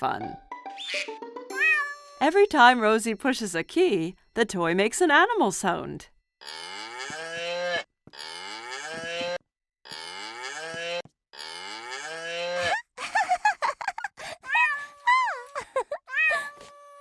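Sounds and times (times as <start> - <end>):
toy cow mooing: 6.4 - 12.6.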